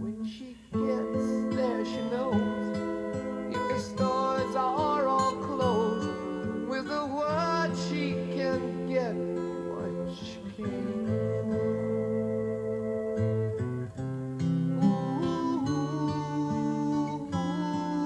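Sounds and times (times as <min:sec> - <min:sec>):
person singing: 0:00.0 - 0:13.8, 0:14.5 - 0:18.0
acoustic guitar: 0:00.0 - 0:18.0.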